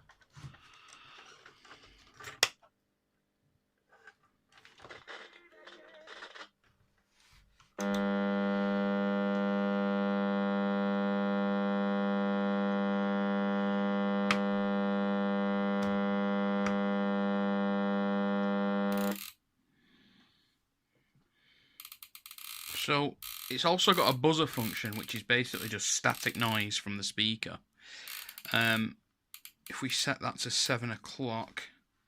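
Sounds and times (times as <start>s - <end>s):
alarm clock buzzer: 7.8s - 19.4s.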